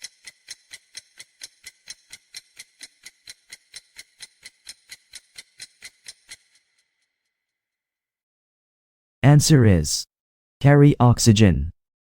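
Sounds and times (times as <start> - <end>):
clock-style ticking timer: 0.0 - 6.9.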